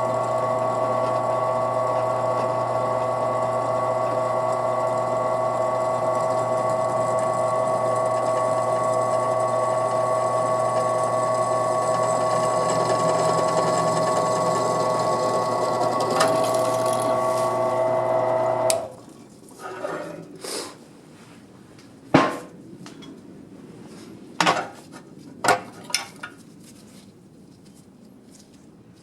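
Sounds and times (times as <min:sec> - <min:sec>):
high-pitched solenoid buzzing hum: 0:00.0 - 0:19.0.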